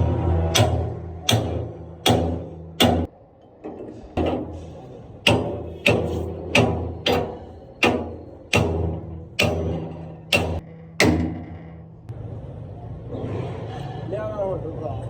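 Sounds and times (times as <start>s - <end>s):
hammer striking metal: 0.0s - 12.1s
steady low hum: 0.0s - 13.1s.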